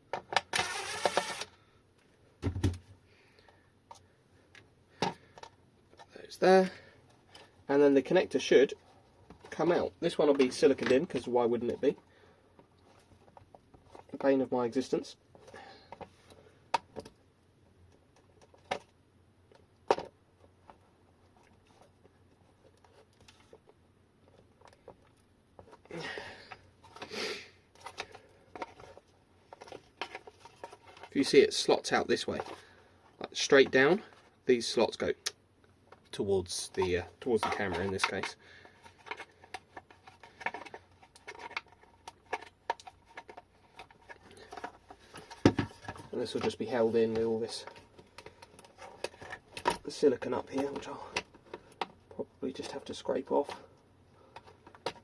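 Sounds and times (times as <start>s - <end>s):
hands handling plastic case: 2.0s - 17.2s, 17.9s - 55.0s
scraping and rustling: 20.4s - 34.4s, 36.5s - 55.0s.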